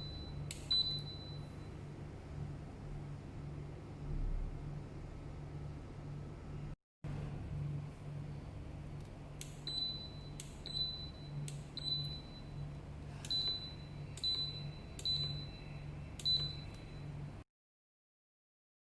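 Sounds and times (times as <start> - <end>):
short high beeps with clicks: 0.0 - 1.6, 13.3 - 17.1
low steady hum: 0.0 - 17.4.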